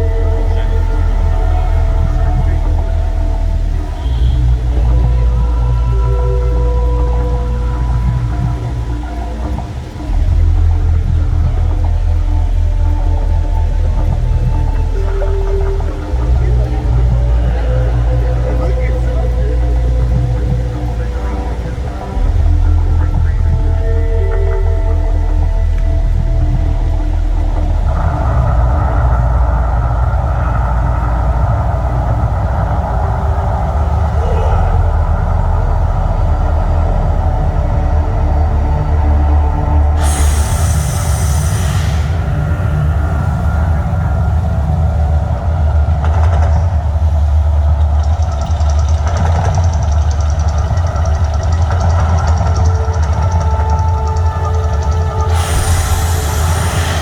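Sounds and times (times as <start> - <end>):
deep steady rumble: 0.0 - 57.0
rushing hiss: 31.0 - 48.7, 50.7 - 57.0.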